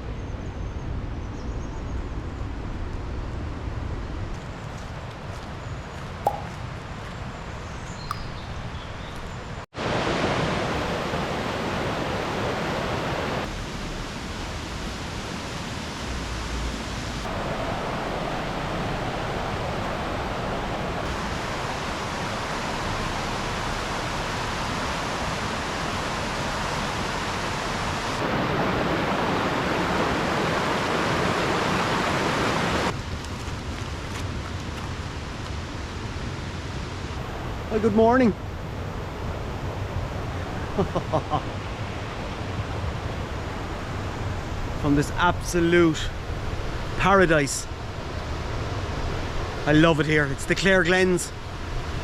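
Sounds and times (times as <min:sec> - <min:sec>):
river water rushing: 0:06.2 - 0:06.9, 0:17.3 - 0:33.0
faint high chirps: 0:07.9 - 0:09.3.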